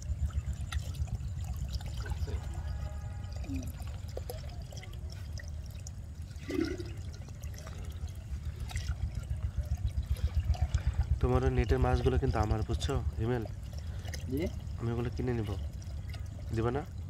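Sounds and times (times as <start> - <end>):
water rushing through channel: 0.0 - 17.0
heavy low rumble: 5.4 - 17.0.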